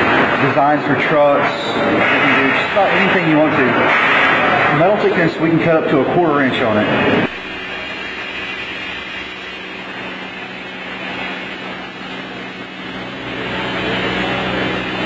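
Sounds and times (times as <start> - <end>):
low electrical hum: 0.0 - 15.0
plasma cutter hiss: 0.1 - 5.7, 7.3 - 15.0.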